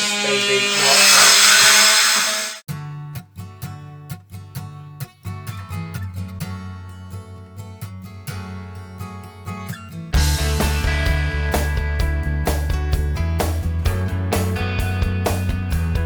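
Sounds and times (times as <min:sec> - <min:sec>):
plucked acoustic guitar: 0:02.7 - 0:16.0
bass line: 0:10.2 - 0:16.0.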